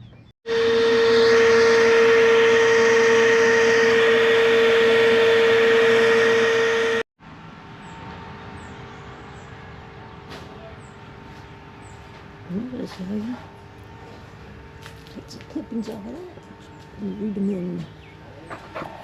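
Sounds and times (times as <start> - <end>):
machine motor whine: 0.5 - 7.1.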